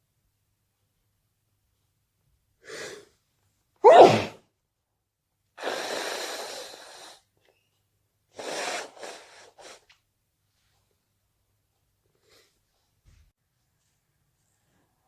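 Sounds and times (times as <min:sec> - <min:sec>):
short sniffs: 0:02.6 - 0:03.1, 0:03.8 - 0:04.4, 0:05.6 - 0:07.3, 0:08.3 - 0:10.0
person sneezing: 0:03.8 - 0:04.4
noisy breath: 0:05.6 - 0:07.3, 0:08.4 - 0:09.9.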